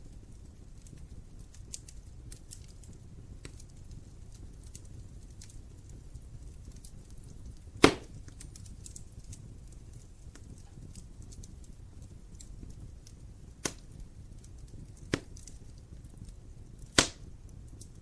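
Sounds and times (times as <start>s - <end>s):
fire crackling: 0.0s - 18.0s
fire rumbling: 0.0s - 18.0s
log popping: 7.8s - 8.4s, 13.6s - 13.9s, 14.9s - 15.6s, 16.8s - 17.3s.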